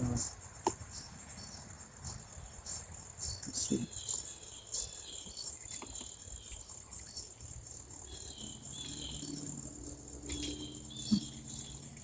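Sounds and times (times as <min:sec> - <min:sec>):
insects chirring: 0:00.0 - 0:12.0
small clicks and chirps: 0:02.1 - 0:08.2.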